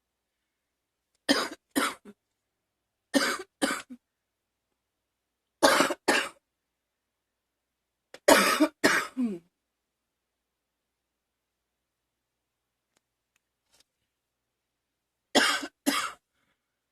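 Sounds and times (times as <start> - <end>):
girl coughing: 1.3 - 2.1, 3.2 - 4.0, 5.6 - 6.4, 8.3 - 9.5, 15.4 - 16.2.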